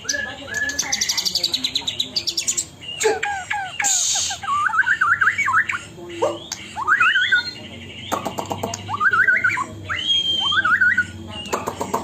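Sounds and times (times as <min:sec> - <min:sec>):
bird singing whistled notes: 0:00.0 - 0:03.0, 0:03.8 - 0:05.8, 0:06.4 - 0:08.2, 0:08.9 - 0:11.7.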